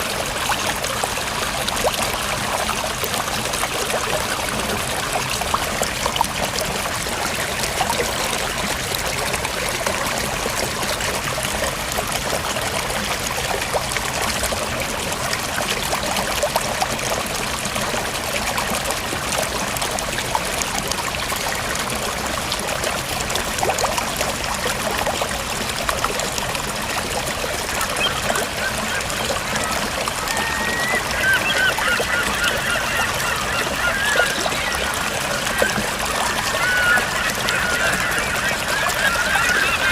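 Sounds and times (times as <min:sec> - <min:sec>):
river water flowing: 0:00.0 - 0:39.9
waterfowl calling: 0:26.8 - 0:39.9.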